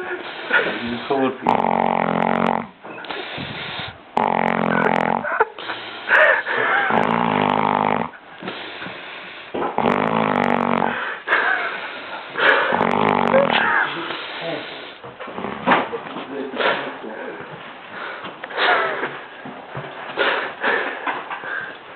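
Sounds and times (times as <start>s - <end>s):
breathy breaths: 0.0s - 5.0s, 5.6s - 15.4s, 16.5s - 21.9s
people snoring: 0.0s - 15.7s.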